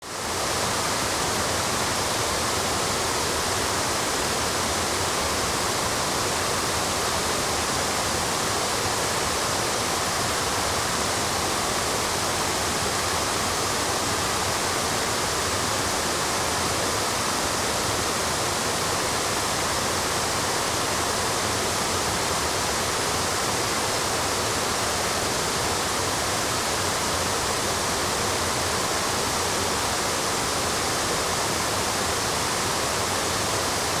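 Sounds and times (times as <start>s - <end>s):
waterfall roaring over rocks: 0.1s - 34.0s.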